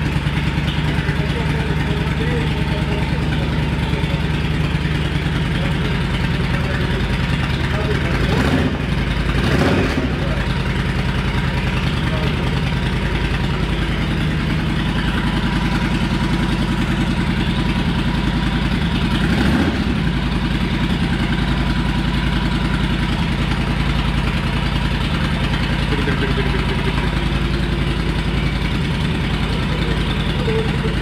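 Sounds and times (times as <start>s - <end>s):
motorcycle engine idling: 0.0s - 31.0s.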